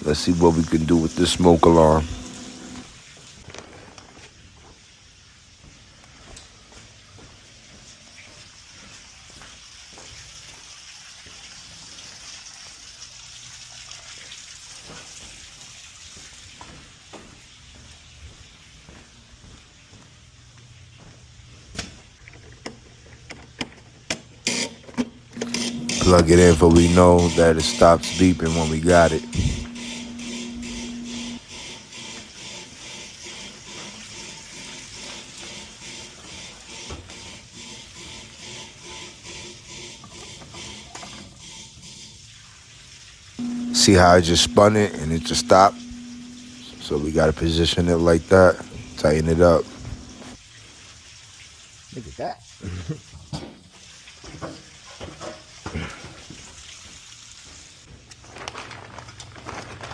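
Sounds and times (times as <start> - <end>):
water pouring and splashing: 7.6 - 18.8, 40.9 - 43.4, 50.4 - 58.4.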